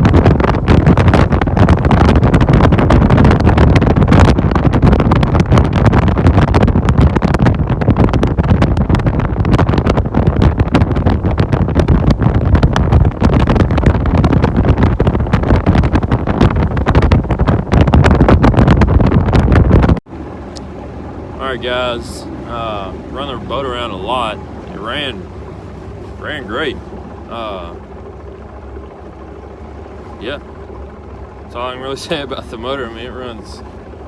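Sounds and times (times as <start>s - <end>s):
outboard motor running: 0.0s - 34.0s
wind buffeting microphone: 0.0s - 34.0s.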